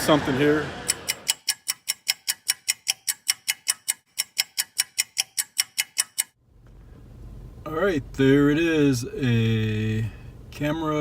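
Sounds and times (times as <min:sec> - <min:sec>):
rapid clock-like ticking: 0:00.9 - 0:06.4.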